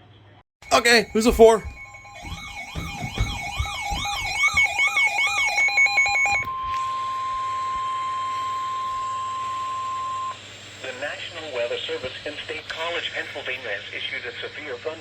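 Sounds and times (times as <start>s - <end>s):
warbling alarm tones: 0.6s - 10.4s
steady alert tone: 0.7s - 6.5s.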